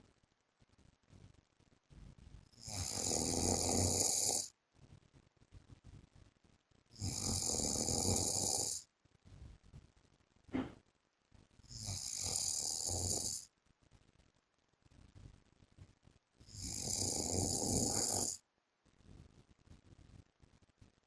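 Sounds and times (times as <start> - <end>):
man snoring: 2.6 - 4.5, 7.0 - 8.8, 11.7 - 13.4, 16.5 - 18.4.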